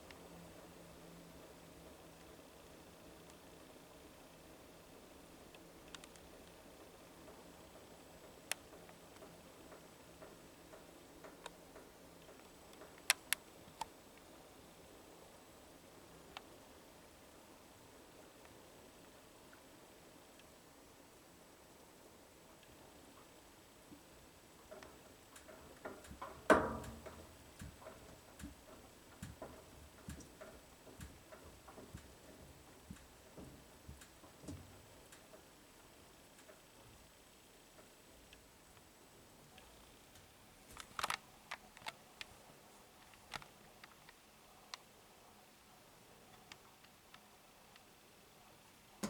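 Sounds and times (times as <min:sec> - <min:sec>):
faint steady hum: 0:00.0 - 0:49.0
sharp irregular clicks: 0:05.5 - 0:14.3, 0:39.5 - 0:42.4, 0:43.0 - 0:44.9
washing machine drum clicking and knocking: 0:25.9 - 0:32.0.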